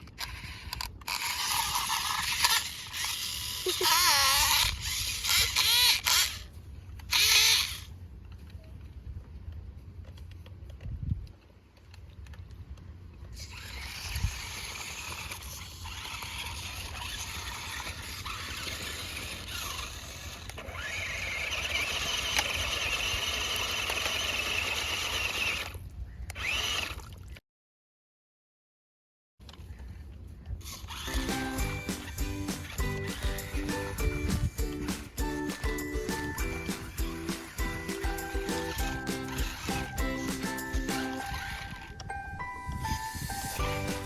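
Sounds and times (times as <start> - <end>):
rc car motor whining: 0.0 - 7.9, 13.3 - 27.0, 30.6 - 42.1.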